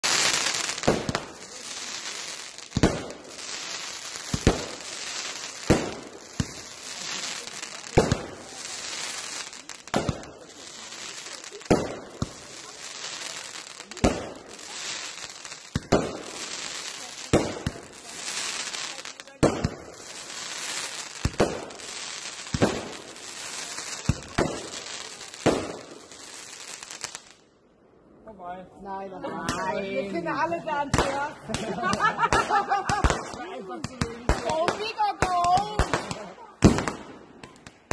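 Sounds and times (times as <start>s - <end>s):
firework shells bursting: 0.0s - 27.4s
fireworks crackle and hiss: 0.0s - 27.6s, 29.4s - 37.9s.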